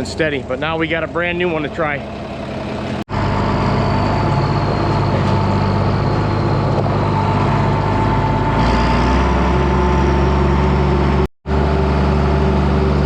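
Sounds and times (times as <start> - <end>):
heavy machine engine running: 0.0 - 13.0
steady whine: 0.0 - 13.0.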